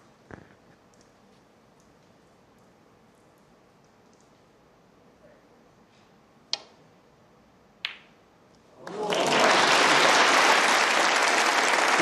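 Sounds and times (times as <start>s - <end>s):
snooker balls clicking: 7.8s - 8.2s
audience applause: 8.8s - 12.0s.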